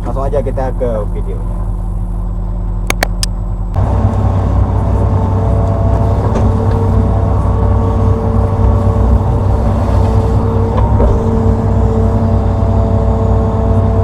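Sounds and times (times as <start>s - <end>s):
excavator diesel engine running: 0.0s - 14.0s
steady hydraulic tones: 3.8s - 13.8s.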